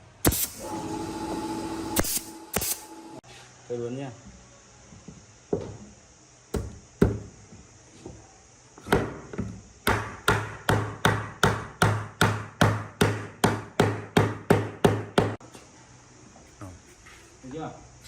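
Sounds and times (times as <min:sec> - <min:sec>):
hammer striking wood: 0:09.8 - 0:15.4.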